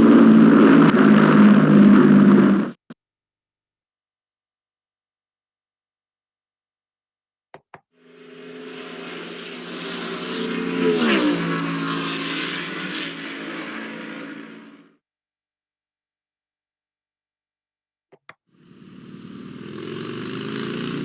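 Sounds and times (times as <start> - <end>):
vehicle driving past: 8.0 - 14.9.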